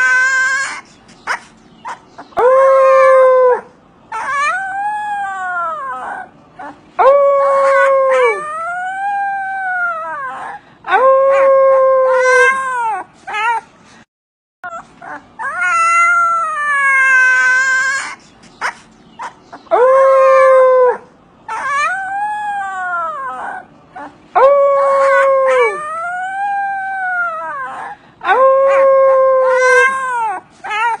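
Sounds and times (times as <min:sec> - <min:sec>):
husky howling: 0:02.4 - 0:12.8, 0:19.7 - 0:30.4.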